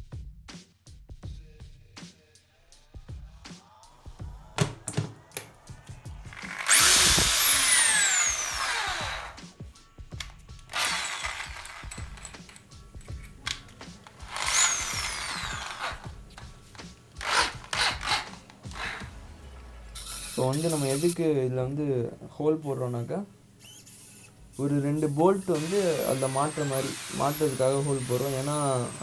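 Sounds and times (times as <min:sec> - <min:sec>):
clicks and knocks: 0:04.6 - 0:05.6
electric drill whining: 0:04.6 - 0:09.5, 0:10.2 - 0:21.2, 0:23.6 - 0:29.0.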